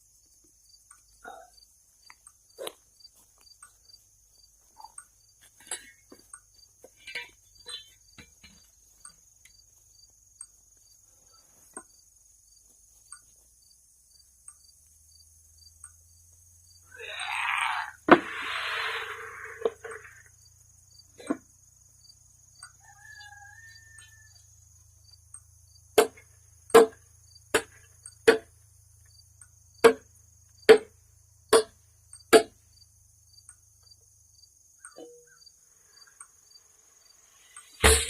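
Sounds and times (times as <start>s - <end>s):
sharp knocks on metal: 26.0s - 28.5s, 29.8s - 30.0s, 30.7s - 30.9s, 31.5s - 32.6s, 37.8s - 38.0s.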